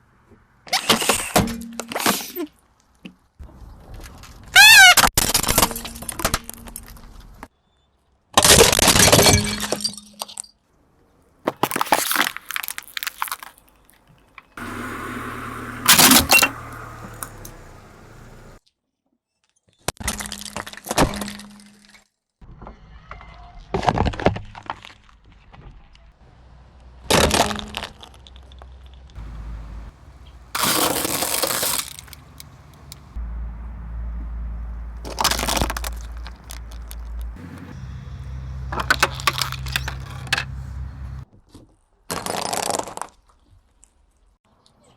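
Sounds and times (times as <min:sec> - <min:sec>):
objects crunching under car tyre: 0:11.4 - 0:18.6, 0:27.0 - 0:33.2, 0:34.2 - 0:44.0
tyres crushing brittle objects: 0:11.5 - 0:14.5, 0:30.5 - 0:33.1, 0:35.0 - 0:37.4, 0:38.7 - 0:40.4
low steady hum: 0:14.6 - 0:18.6.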